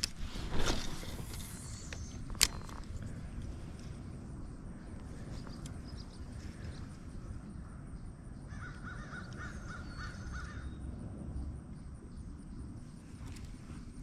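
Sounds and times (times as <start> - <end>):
steady low rumble: 0.0 - 14.0
bird calling: 8.4 - 10.8.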